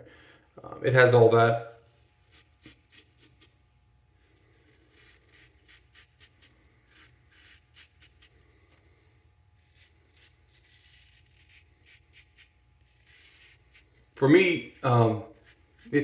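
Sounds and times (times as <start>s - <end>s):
razor scraping stubble: 1.9s - 3.6s, 4.4s - 8.7s, 9.5s - 16.0s.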